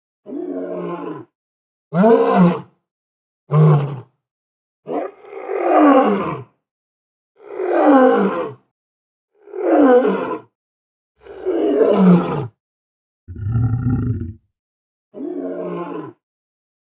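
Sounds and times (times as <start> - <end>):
lion roaring: 11.3 - 12.5, 13.3 - 14.4.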